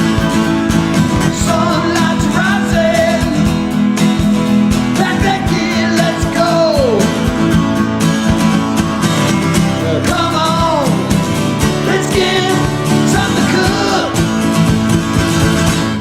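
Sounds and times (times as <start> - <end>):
guitar: 0.0 - 16.0
steady beat: 0.0 - 16.0
person singing: 1.1 - 3.6, 4.9 - 7.3, 9.6 - 14.7.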